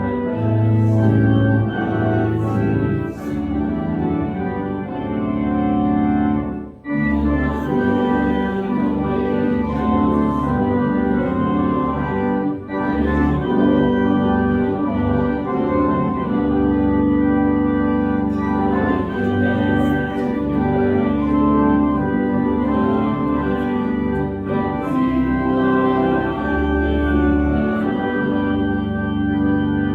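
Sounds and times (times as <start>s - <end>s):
church organ chords: 0.0s - 29.9s.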